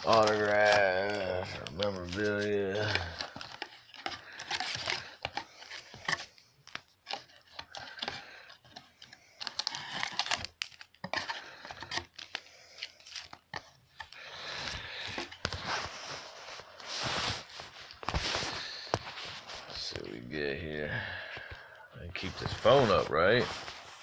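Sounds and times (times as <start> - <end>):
packaging tearing: 0.0 - 8.2, 9.4 - 13.4
wrapper crinkling: 0.0 - 20.3.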